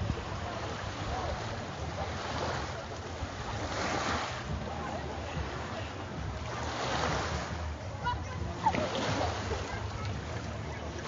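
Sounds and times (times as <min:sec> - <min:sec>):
surf washing ashore: 0:00.0 - 0:11.0
wind rumbling on microphone: 0:00.0 - 0:11.0.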